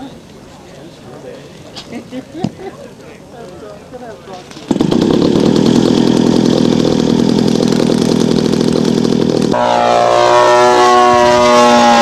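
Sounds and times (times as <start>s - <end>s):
model aircraft engine firing: 4.5s - 10.4s
high-pitched model engine whine: 4.5s - 12.0s.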